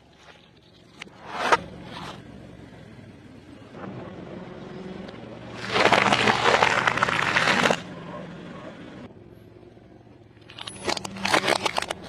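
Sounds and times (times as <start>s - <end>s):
car engine hum: 0.1s - 12.0s
tyre crushing something crunchy: 5.5s - 7.9s.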